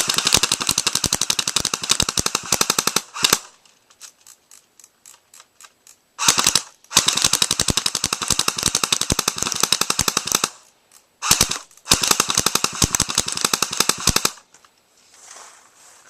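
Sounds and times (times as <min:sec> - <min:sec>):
airsoft guns firing full auto: 0:00.0 - 0:03.6, 0:06.2 - 0:10.6, 0:11.2 - 0:14.5.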